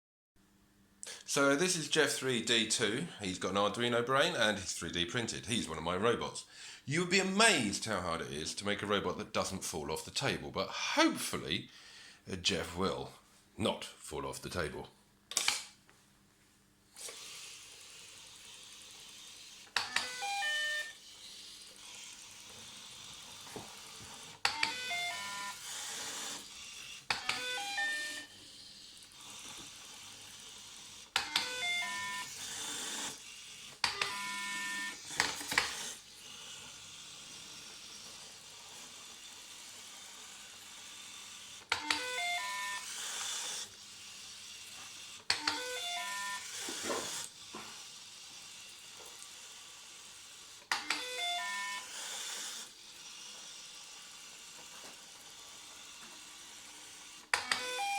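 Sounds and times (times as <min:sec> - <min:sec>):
small motors whirring: 0:17.0 - 0:57.9.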